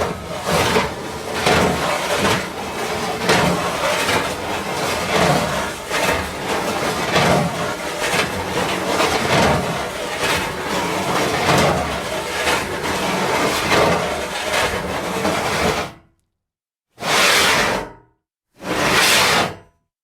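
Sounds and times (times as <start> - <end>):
metal sheets scraping: 0.0 - 15.9.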